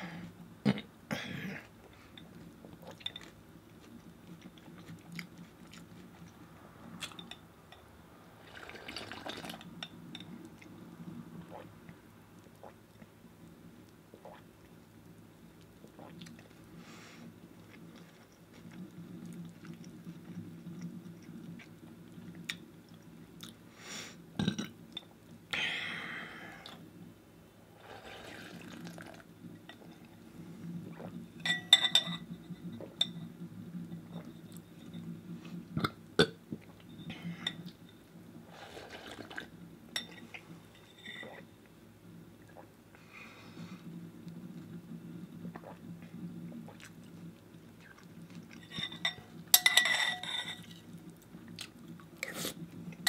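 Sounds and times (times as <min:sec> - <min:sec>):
wet milk sounds: 0:08.4 - 0:09.7, 0:27.7 - 0:31.3, 0:43.6 - 0:49.2
spoon clinking against bowl: 0:31.5 - 0:32.2, 0:48.7 - 0:50.7.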